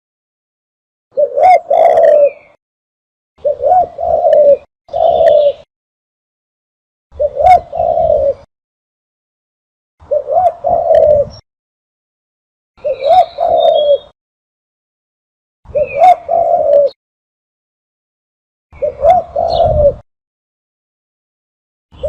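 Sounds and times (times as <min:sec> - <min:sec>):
dove cooing: 0:01.2 - 0:02.6, 0:03.4 - 0:05.7, 0:07.1 - 0:08.5, 0:10.0 - 0:11.4, 0:12.8 - 0:14.1, 0:15.7 - 0:17.0, 0:18.8 - 0:20.0.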